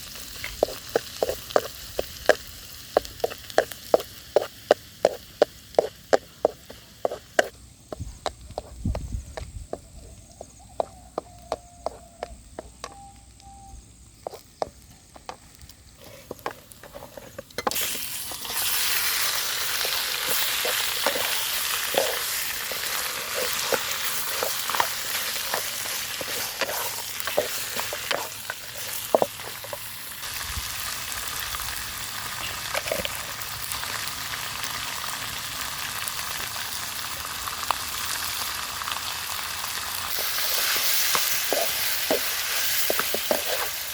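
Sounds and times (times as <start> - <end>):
food sizzling in hot oil: 0.0 - 7.5, 17.6 - 43.9.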